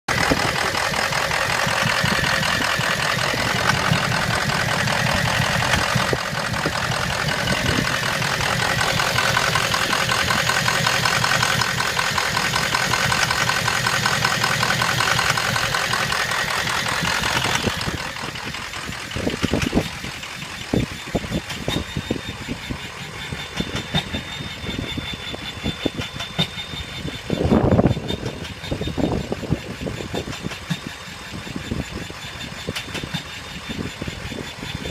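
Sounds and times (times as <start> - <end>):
diesel engine knocking: 0.0 - 34.9
engine thump: 0.1 - 25.0, 25.6 - 31.8.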